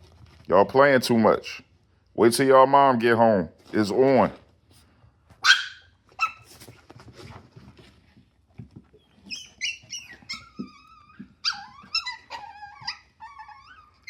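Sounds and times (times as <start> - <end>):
puppies scuffling: 3.5 - 14.0
puppy high-pitched whining: 8.9 - 14.0.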